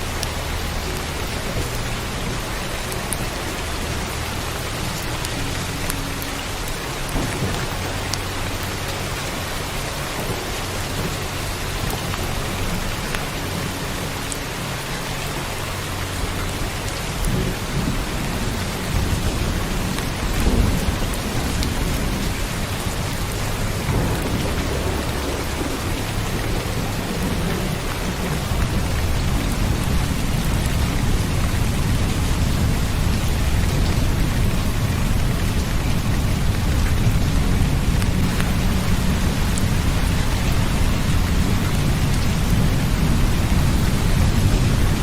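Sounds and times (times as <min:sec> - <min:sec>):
steady rain: 0:00.0 - 0:45.0
low rolls of thunder: 0:07.0 - 0:12.9, 0:17.1 - 0:45.0.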